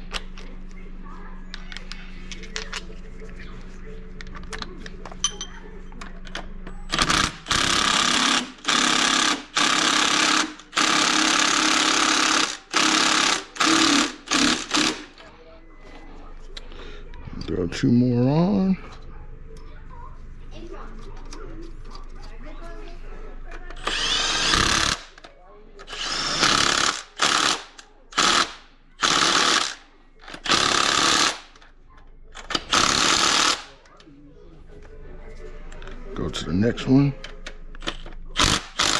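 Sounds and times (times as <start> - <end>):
impact wrench rattling: 6.9 - 15.2, 25.9 - 31.7, 32.4 - 33.7.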